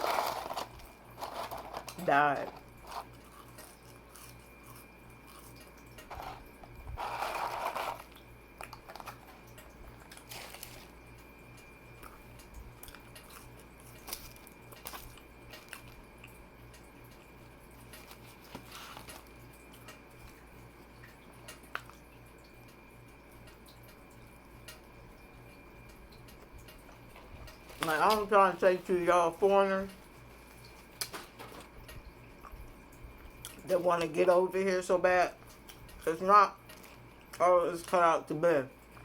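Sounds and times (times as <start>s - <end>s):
person chewing: 0.0s - 11.0s, 12.0s - 16.4s.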